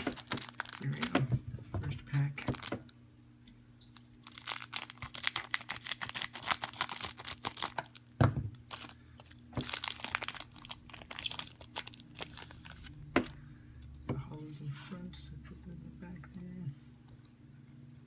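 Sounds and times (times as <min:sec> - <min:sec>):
wrapper crinkling and tearing: 0:00.0 - 0:01.2, 0:02.4 - 0:03.0, 0:04.0 - 0:13.0.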